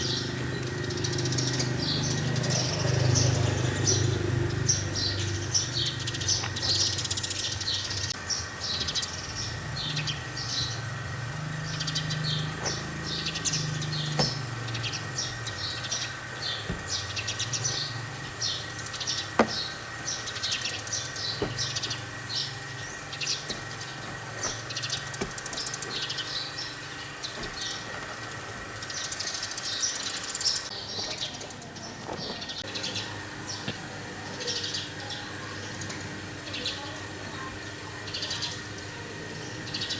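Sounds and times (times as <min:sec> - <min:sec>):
birds chirping: 0:00.0 - 0:39.9.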